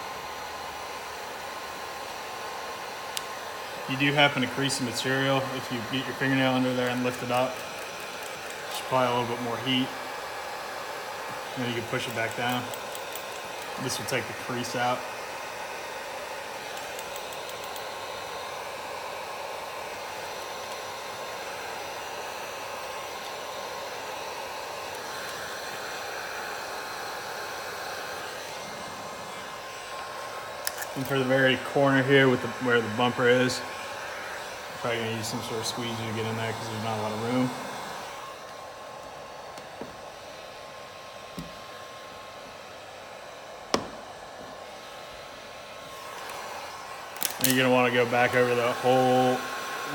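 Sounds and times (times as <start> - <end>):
heat gun blowing: 0.0 - 49.9
light taps: 41.4 - 41.6.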